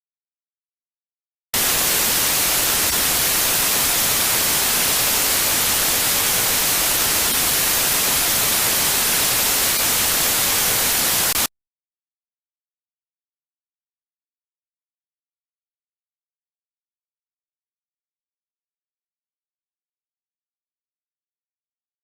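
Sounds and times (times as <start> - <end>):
loud static hiss: 1.6 - 11.5.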